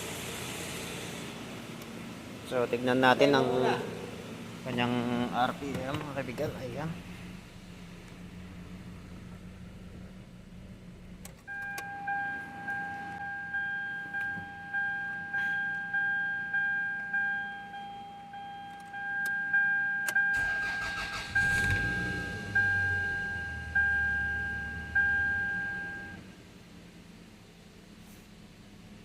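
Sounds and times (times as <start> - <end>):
car engine humming: 0.0 - 29.0
dashboard warning chime dinging: 11.4 - 26.2
engine cranking and starting: 20.3 - 22.8.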